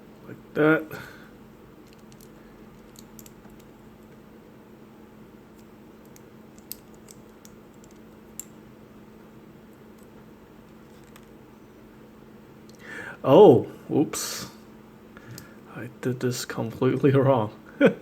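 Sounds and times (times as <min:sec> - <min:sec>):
faint steady hum: 0:00.0 - 0:18.0
plastic parts clicking: 0:01.8 - 0:03.7.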